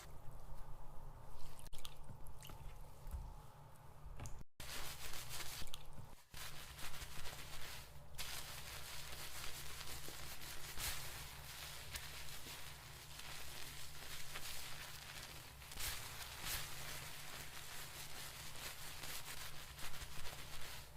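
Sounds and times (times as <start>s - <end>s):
hands rubbing through hair: 4.6s - 20.9s.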